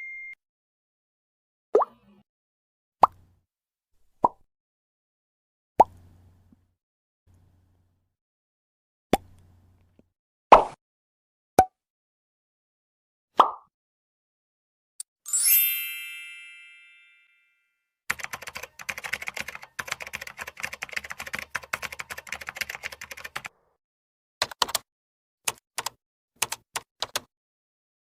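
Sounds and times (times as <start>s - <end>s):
bell-like ding: 0.0s - 0.4s, 15.3s - 17.8s
keyboard typing clicks: 18.1s - 23.5s, 24.4s - 24.8s, 25.5s - 27.3s.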